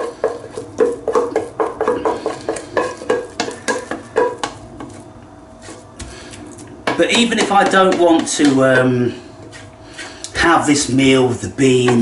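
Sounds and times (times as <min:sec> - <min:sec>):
spoon scraping a pan: 0:00.0 - 0:05.0.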